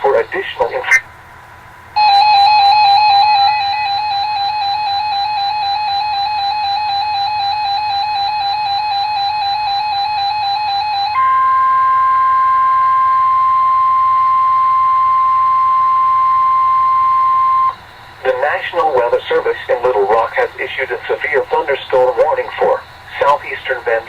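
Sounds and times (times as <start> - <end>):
electronic warbling alert tone: 2.0 - 5.2
steady alarm tone: 2.0 - 24.0.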